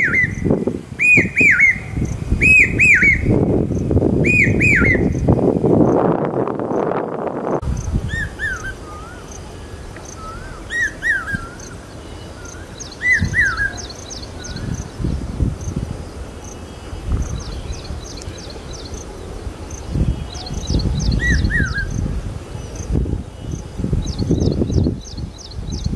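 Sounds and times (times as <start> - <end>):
cuckoo whistled calls: 0.0 - 3.4, 4.2 - 5.3, 8.1 - 15.0, 19.9 - 22.0
small birds chirping: 0.0 - 7.0, 7.7 - 25.9
rush of noise: 0.0 - 25.9.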